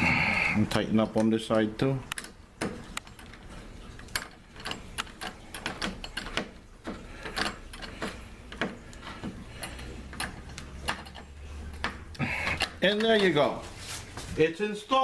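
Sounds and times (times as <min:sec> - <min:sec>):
screwdriver clicking and scraping: 0:02.1 - 0:13.4.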